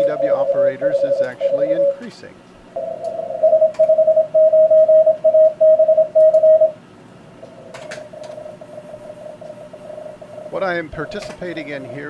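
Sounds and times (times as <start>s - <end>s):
morse code tone: 0.0s - 2.1s, 2.8s - 6.8s
receiver hiss: 0.0s - 3.5s, 8.0s - 12.0s.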